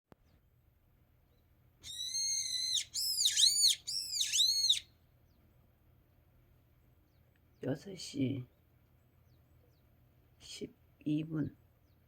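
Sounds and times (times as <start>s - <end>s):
bird calling: 1.8s - 4.9s.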